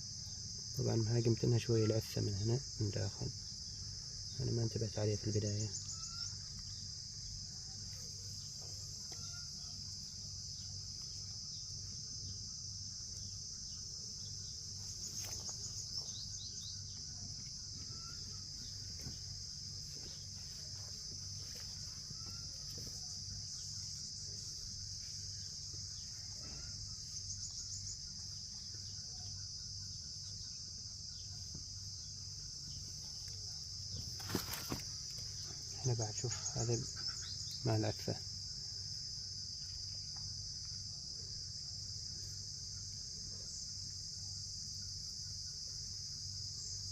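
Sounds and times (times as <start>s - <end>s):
insect chirring: 0.0s - 46.9s.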